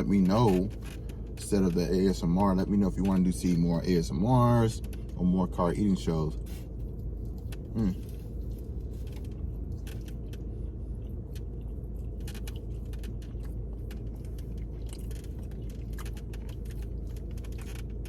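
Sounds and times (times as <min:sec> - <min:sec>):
low hum inside car: 0:00.0 - 0:18.0
person chewing: 0:06.4 - 0:18.0.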